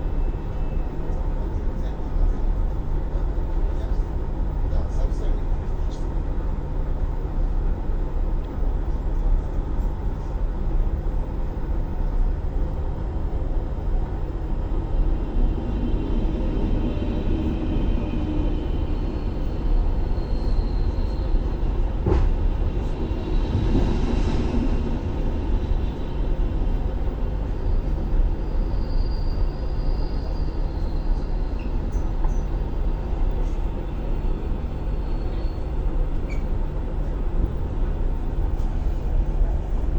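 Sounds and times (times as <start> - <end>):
constant low hum: 0.0 - 39.9
train low rumble: 0.0 - 39.9.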